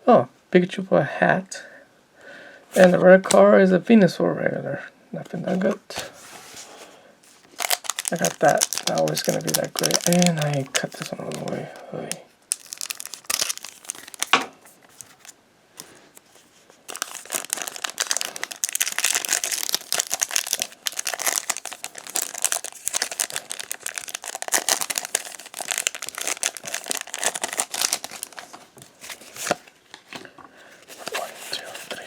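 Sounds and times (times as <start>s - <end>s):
foil wrapper crinkling: 7.3s - 11.8s, 12.5s - 29.8s, 30.8s - 32.0s.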